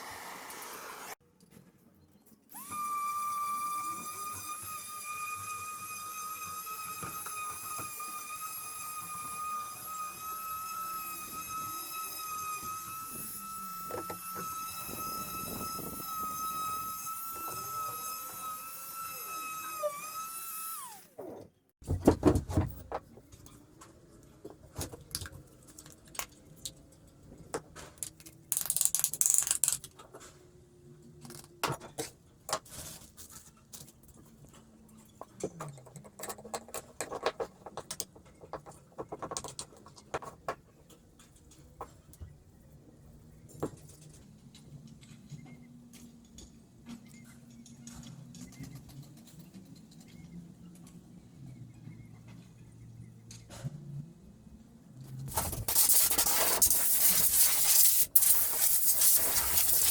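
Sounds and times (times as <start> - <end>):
power tool motor whining: 2.5 - 21.1.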